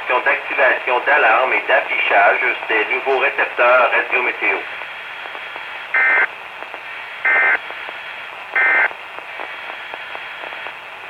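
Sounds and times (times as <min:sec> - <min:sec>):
radio hiss: 0:00.0 - 0:11.0
buzzy two-tone data bursts: 0:05.9 - 0:06.3.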